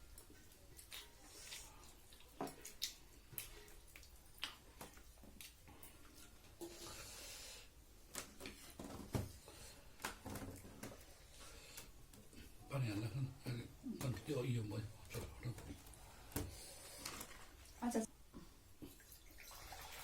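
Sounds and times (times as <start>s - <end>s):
chewing and mouth smacks: 0.0s - 6.2s.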